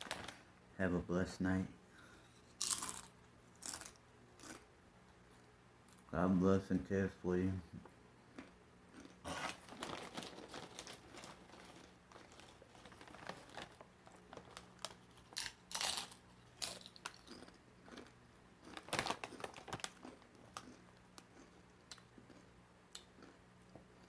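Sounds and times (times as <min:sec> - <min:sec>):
chip bag crinkling: 0:00.0 - 0:00.5, 0:02.6 - 0:04.6, 0:08.9 - 0:22.4.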